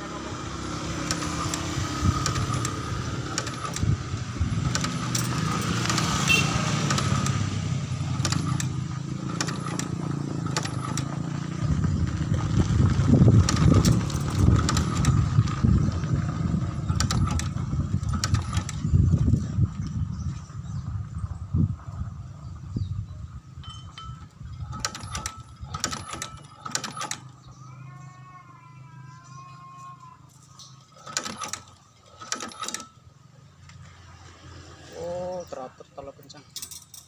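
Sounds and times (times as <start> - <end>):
stitching machine humming: 0.0 - 12.2, 13.2 - 18.9, 24.6 - 27.4, 30.9 - 32.9
sharp machine clicks: 0.9 - 11.3, 13.3 - 15.6, 16.8 - 18.9, 24.6 - 27.4, 30.9 - 33.0.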